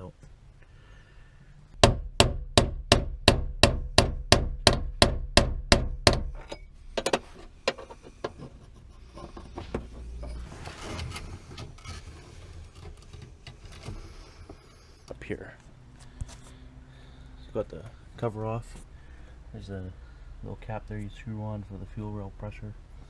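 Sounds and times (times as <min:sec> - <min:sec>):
rustling: 0:06.4 - 0:15.0.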